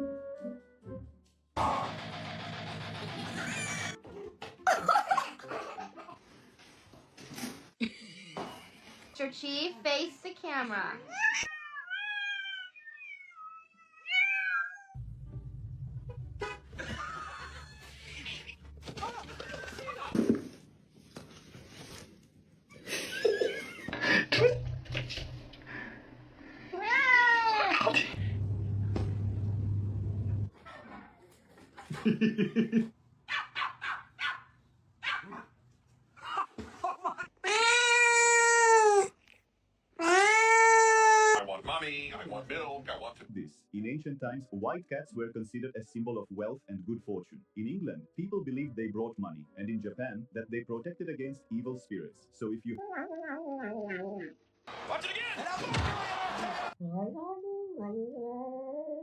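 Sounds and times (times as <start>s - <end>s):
cat meowing: 11.1s - 15.0s, 26.8s - 28.0s, 40.0s - 41.4s
low hum: 28.2s - 30.5s.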